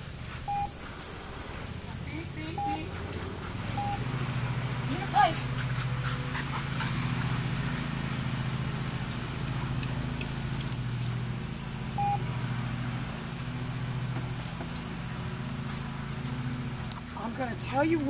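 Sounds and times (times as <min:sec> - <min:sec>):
low motor hum: 0:00.0 - 0:18.0
high electronic beep: 0:00.5 - 0:00.8, 0:12.0 - 0:12.2.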